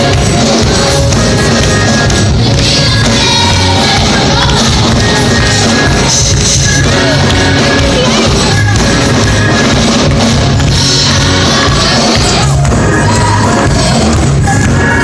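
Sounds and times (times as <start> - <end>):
full band with drums: 0.0 - 15.0
gospel singing: 0.0 - 15.0.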